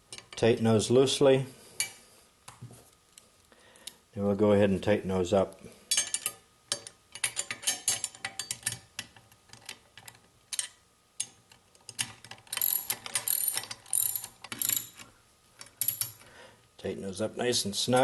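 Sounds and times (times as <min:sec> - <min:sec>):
socket ratchet clicking: 0:10.5 - 0:15.0.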